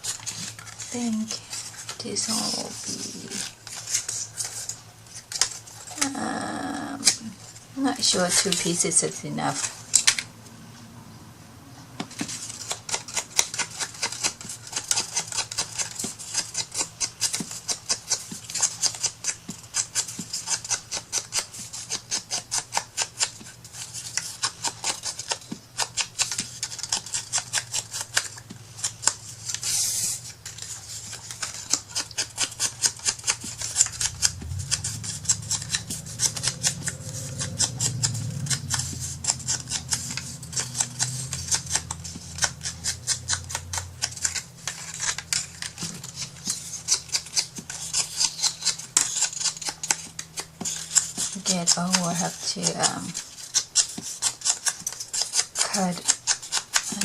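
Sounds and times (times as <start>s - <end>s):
scissors snipping paper: 12.0s - 57.0s
low hum: 32.7s - 47.8s.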